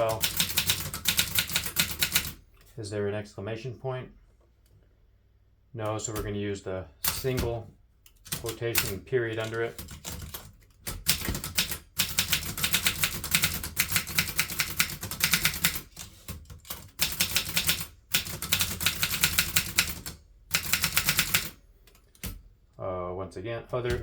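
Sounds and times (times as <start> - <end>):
manual typewriter typing: 0.0 - 2.4, 7.0 - 7.6, 8.2 - 22.3.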